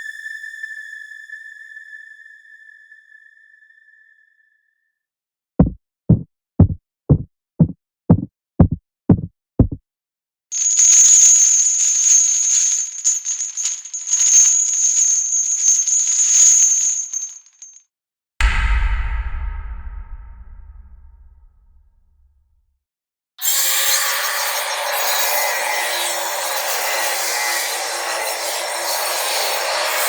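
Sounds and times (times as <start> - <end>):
sharp knocks: 5.6 - 9.8
steady high whine: 18.4 - 21.9
deep booming hit: 18.4 - 22.3.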